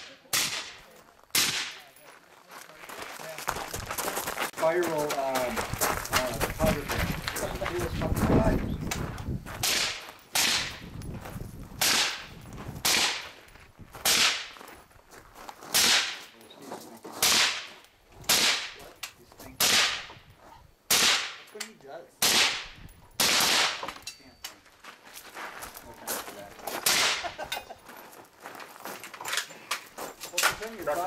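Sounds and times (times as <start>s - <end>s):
rifle shots echoing: 0.3s - 1.9s, 9.6s - 10.8s, 11.8s - 13.4s, 14.0s - 14.6s, 15.7s - 16.3s, 17.2s - 18.8s, 19.6s - 20.1s, 20.9s - 21.5s, 22.2s - 23.9s, 26.8s - 27.3s.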